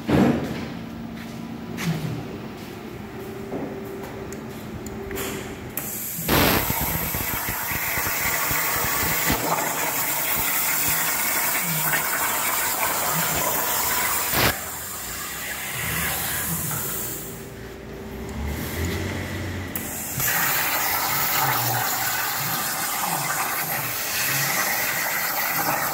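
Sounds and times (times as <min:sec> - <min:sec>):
plasma arc striking click: 0:05.1 - 0:09.5
air hissing: 0:05.8 - 0:09.5
plasma cutter cutting hiss: 0:05.8 - 0:17.4, 0:19.8 - 0:25.9.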